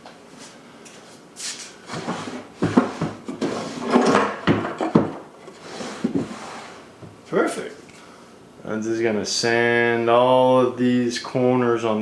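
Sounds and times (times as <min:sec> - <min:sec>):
wooden drawers sliding: 0:01.9 - 0:07.1
wood-on-wood knocks: 0:02.6 - 0:05.3.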